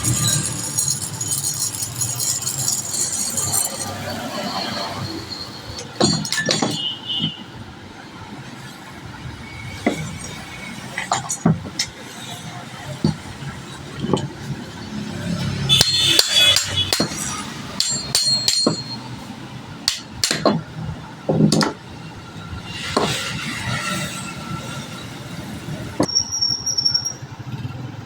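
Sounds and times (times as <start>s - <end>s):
metallic clinks: 0.0s - 6.9s, 15.7s - 19.2s.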